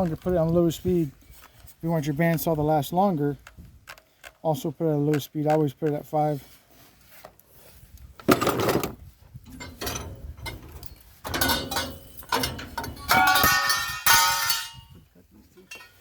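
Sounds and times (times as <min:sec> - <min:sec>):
copper pipes clanging against metal: 0:08.3 - 0:16.0.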